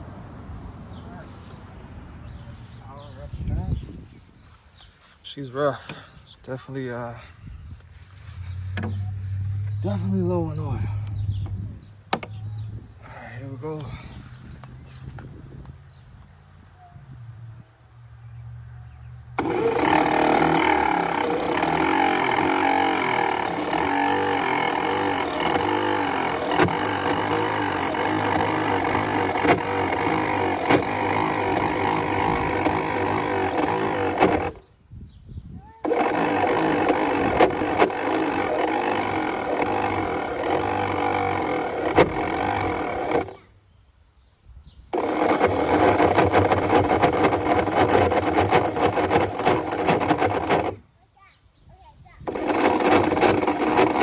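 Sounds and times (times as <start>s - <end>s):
pump motor whining: 8.3s - 11.2s, 19.4s - 34.7s, 35.8s - 43.5s, 44.9s - 50.8s, 52.2s - 54.0s.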